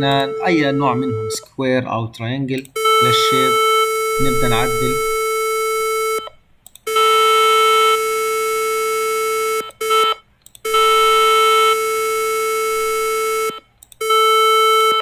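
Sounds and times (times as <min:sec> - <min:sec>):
square-wave test tone: 0:04.2 - 0:06.2.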